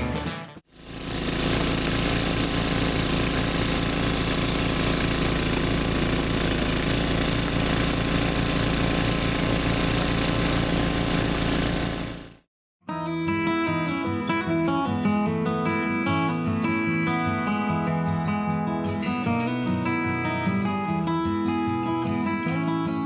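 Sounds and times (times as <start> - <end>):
snowblower engine running: 0.7 - 12.5.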